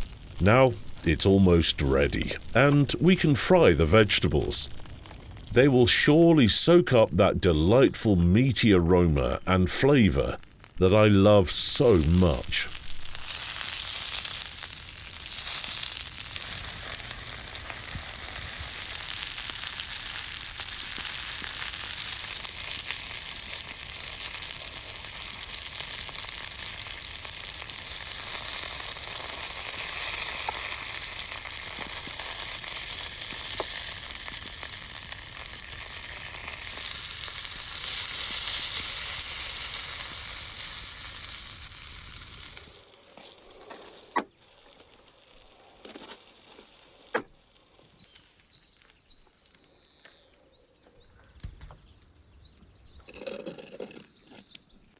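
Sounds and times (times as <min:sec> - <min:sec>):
food sizzling in a pan: 0:12.5 - 0:45.5.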